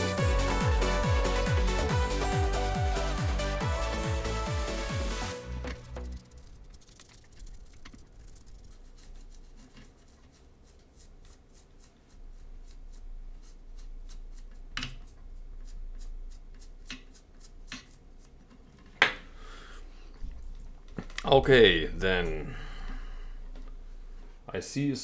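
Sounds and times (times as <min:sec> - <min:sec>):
hands and tools handling: 0:06.7 - 0:19.4.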